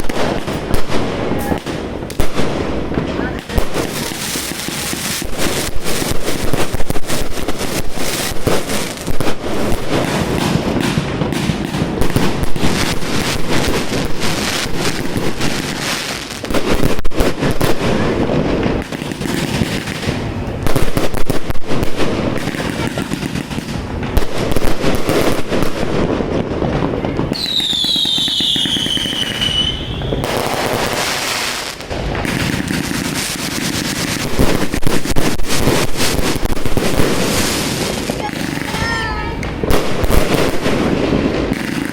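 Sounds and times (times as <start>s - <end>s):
fireworks bangs and crackling: 0.0s - 41.9s
whistling firework falling pitch: 27.4s - 30.4s.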